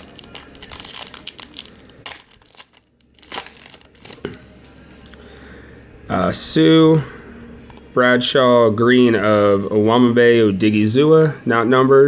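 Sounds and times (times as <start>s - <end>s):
plastic wrapper crinkling and tearing: 0.0s - 4.4s.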